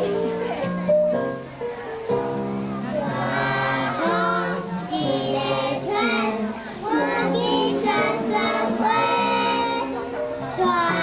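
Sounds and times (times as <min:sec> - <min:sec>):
children singing: 0:03.0 - 0:11.0.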